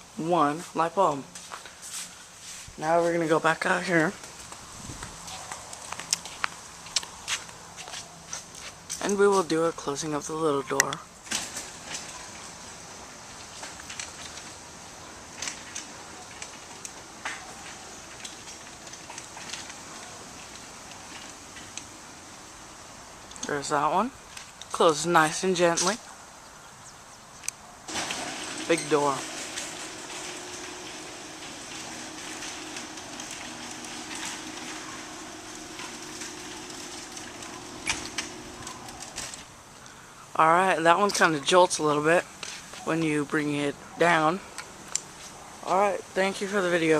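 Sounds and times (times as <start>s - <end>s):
garage door clicks and rattles: 27.9s - 39.5s
garage door opener running: 27.9s - 39.5s.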